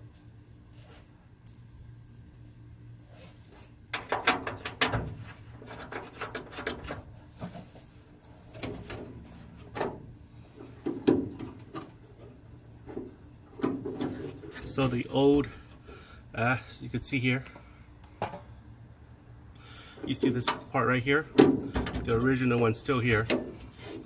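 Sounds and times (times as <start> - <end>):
parts clicking and scraping: 3.3 - 14.9.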